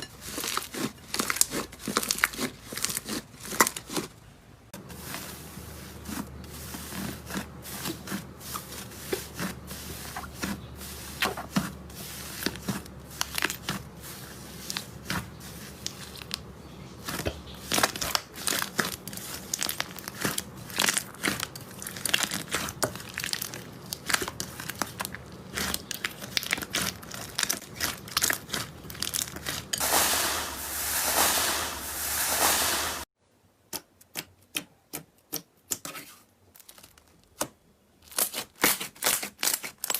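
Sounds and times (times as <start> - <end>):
slime squished with sticky pops: 17.0 - 29.6.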